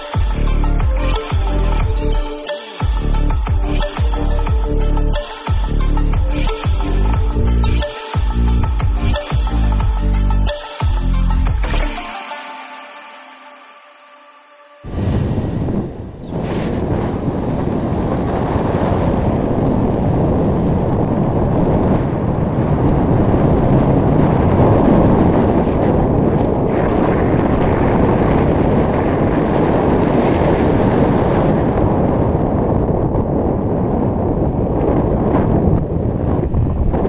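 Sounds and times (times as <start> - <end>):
wind buffeting microphone: 14.9 - 37.0.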